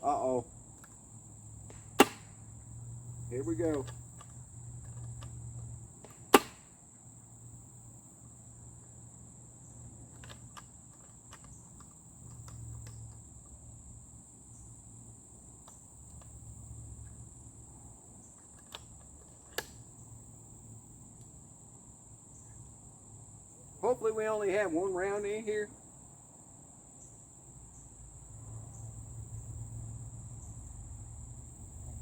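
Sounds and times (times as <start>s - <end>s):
insects chirring: 0.0s - 32.0s
air rifle shot: 1.8s - 2.4s, 6.3s - 6.7s
small clicks: 10.1s - 13.6s, 18.3s - 19.8s.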